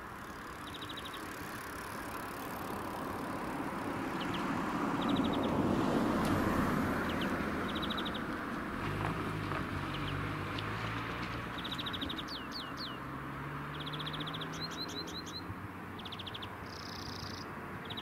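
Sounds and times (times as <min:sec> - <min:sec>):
road vehicle passing by: 0:00.0 - 0:18.0
bird chirping trills: 0:00.2 - 0:02.8, 0:07.1 - 0:08.2, 0:11.6 - 0:13.1, 0:13.7 - 0:18.0.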